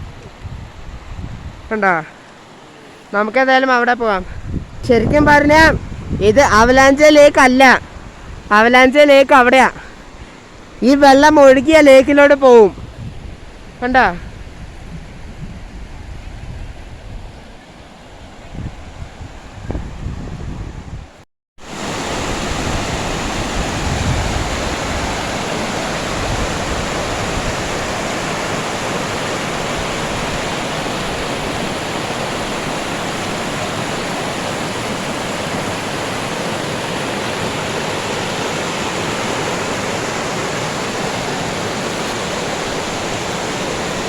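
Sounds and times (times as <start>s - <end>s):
stream rushing over rocks: 0.0s - 4.8s, 21.6s - 44.0s.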